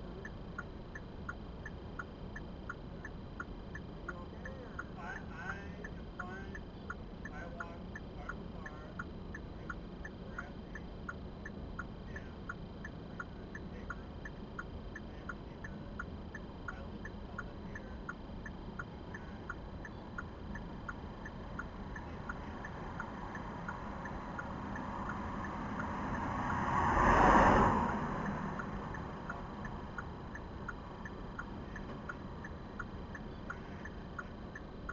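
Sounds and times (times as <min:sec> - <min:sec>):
road and engine hum: 0:00.0 - 0:34.9
turn signal clicking: 0:00.0 - 0:34.9
vehicle passing: 0:20.8 - 0:33.2.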